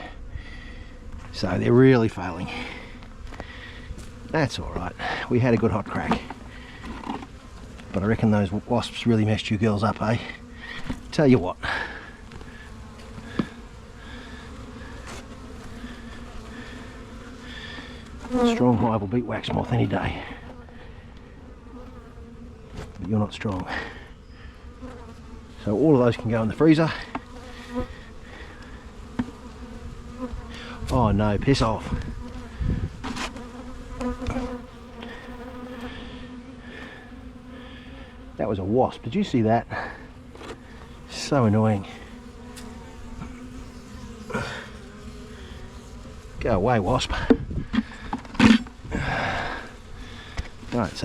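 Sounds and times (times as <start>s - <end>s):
honeybees buzzing: 0.0s - 51.0s.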